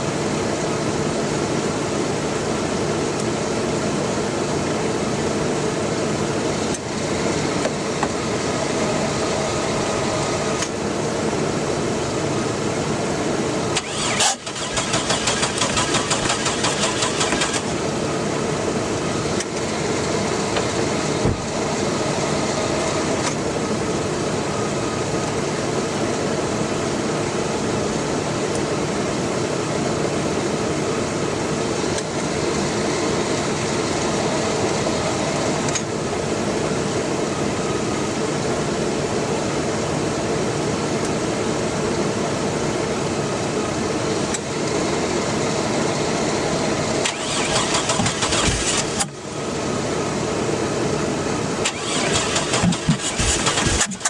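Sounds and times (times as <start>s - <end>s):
engine cranking on starter: 13.8s - 17.8s, 47.0s - 49.2s, 51.6s - 54.0s.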